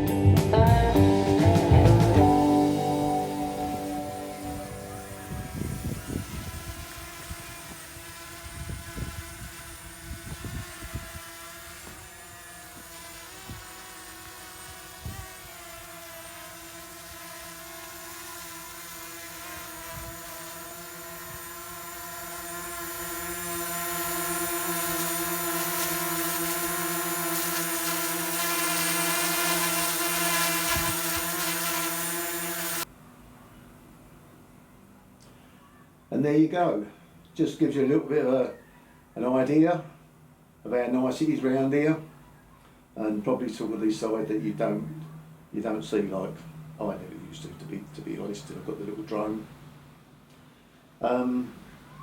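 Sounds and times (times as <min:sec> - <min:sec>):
low thumps: 0:00.4 - 0:03.1
drone propellers whining: 0:00.9 - 0:32.8.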